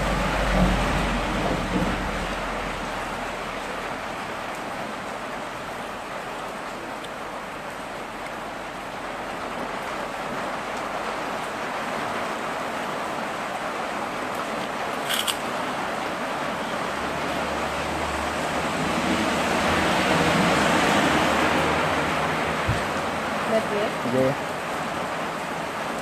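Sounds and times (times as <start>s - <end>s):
low engine hum: 0.0s - 10.2s.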